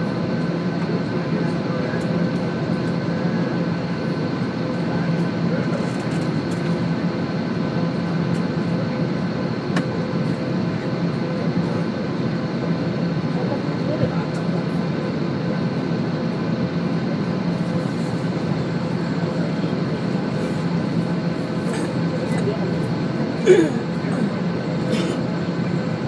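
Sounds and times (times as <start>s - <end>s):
airliner cabin engine hum: 0.0s - 26.0s.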